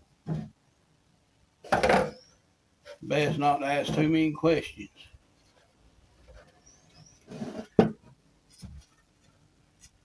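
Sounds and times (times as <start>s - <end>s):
high bird chirps: 2.1s - 2.4s.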